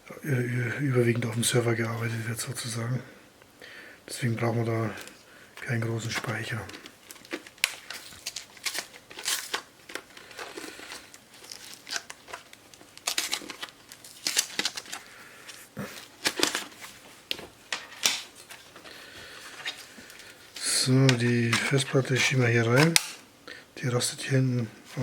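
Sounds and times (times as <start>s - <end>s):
plastic packaging crinkling: 4.8s - 23.2s.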